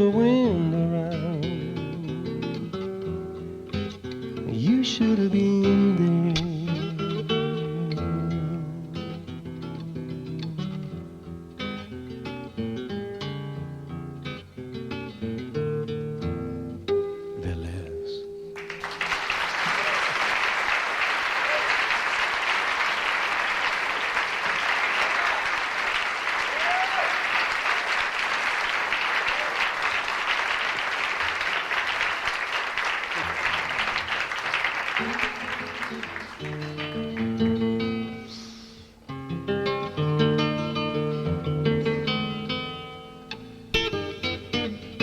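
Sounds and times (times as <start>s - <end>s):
acoustic guitar picking: 0.0s - 18.6s, 35.0s - 45.0s
audience cheering: 18.6s - 37.4s
audience applauding: 18.6s - 37.6s.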